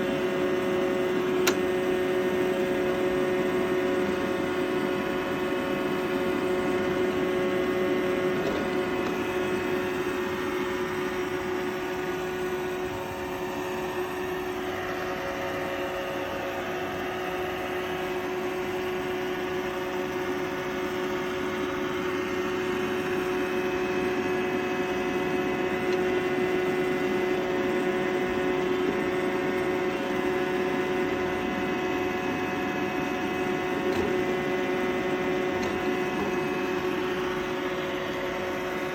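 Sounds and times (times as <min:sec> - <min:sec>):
robot vacuum motor whirring: 0:05.4 - 0:13.4, 0:20.0 - 0:38.9.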